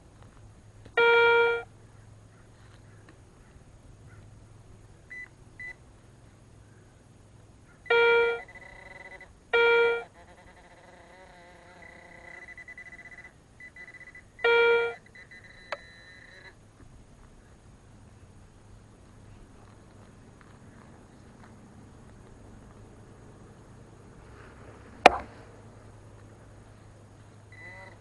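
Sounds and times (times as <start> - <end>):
high steady detector tones: 1.0 - 1.7, 7.8 - 16.6, 27.5 - 28.0
metal detector beeps: 1.0 - 1.7, 5.1 - 5.8, 7.9 - 10.6, 11.7 - 16.6, 27.5 - 28.0.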